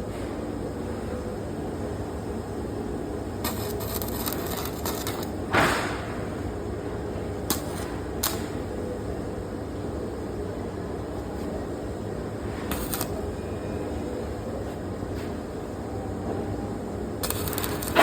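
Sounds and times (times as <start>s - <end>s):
steady welding hum: 0.0s - 18.0s
irregular crackling: 3.4s - 5.3s, 12.7s - 13.1s, 17.2s - 18.0s.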